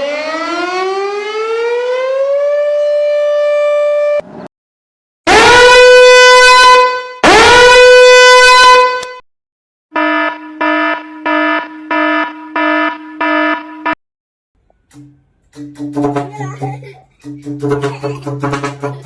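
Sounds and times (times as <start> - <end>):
long horn blasts rising in pitch: 5.3 - 9.2, 9.9 - 13.9.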